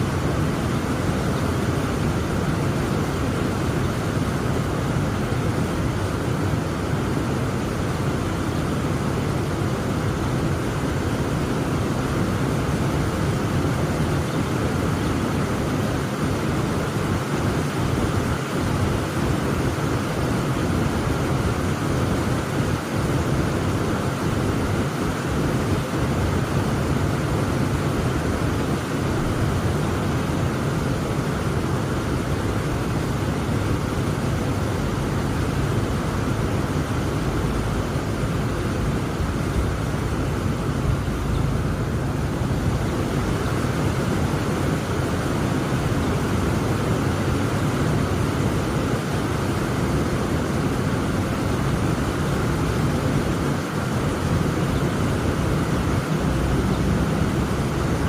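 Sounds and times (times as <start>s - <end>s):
heavy rain falling: 0.0s - 58.0s
deep continuous rumble: 25.7s - 46.8s.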